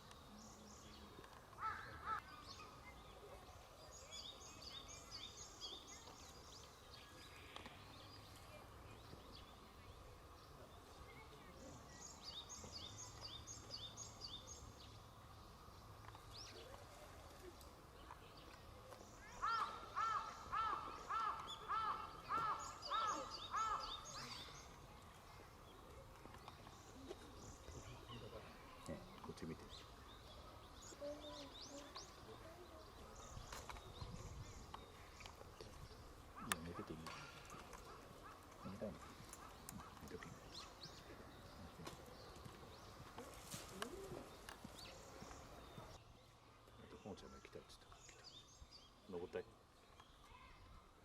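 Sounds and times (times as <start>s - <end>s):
loud bird call: 19.4s - 24.5s.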